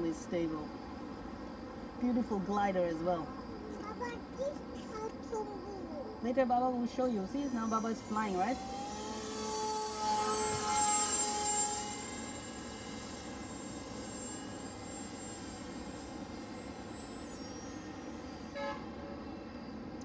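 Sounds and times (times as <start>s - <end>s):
electric motor and propeller whining: 0.0s - 20.0s.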